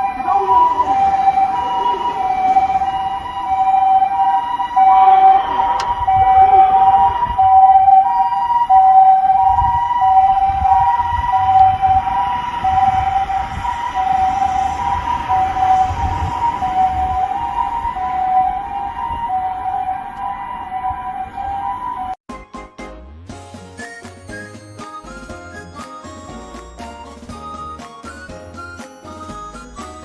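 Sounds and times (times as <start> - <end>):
low vehicle rumble: 0.0 - 22.2
two-tone siren: 0.0 - 22.2.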